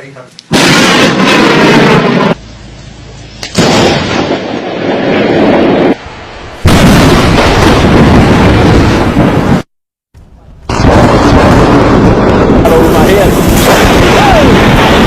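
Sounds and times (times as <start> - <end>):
thunder cracks and rumbles: 0.5 - 2.4, 3.6 - 6.0, 6.6 - 9.7, 10.7 - 15.0.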